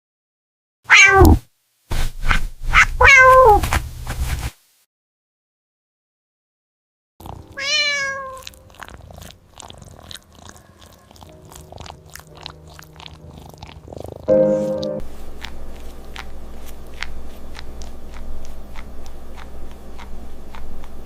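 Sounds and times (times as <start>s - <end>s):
cat meowing: 0.9s - 1.4s, 2.8s - 3.6s, 7.3s - 11.2s
crunchy chewing: 7.2s - 21.0s.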